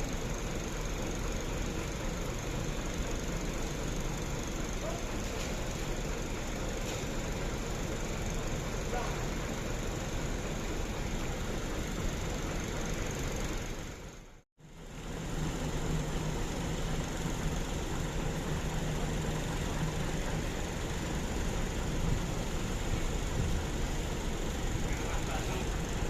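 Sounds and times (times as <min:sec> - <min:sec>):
diesel bus engine idling: 0:00.0 - 0:26.0.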